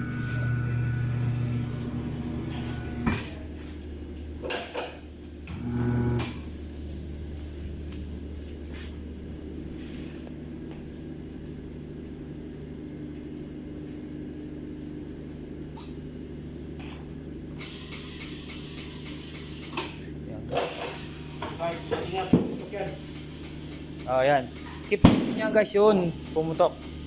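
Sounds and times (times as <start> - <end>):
machinery humming: 0.0 - 14.1, 17.1 - 27.0
compressed air hissing: 17.6 - 25.2.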